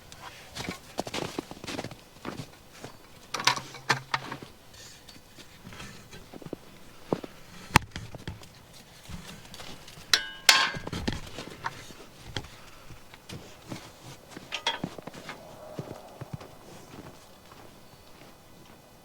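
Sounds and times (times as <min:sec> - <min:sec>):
pigs eating grain: 0:10.9 - 0:18.4
sharp knocks and clatter: 0:14.5 - 0:15.0.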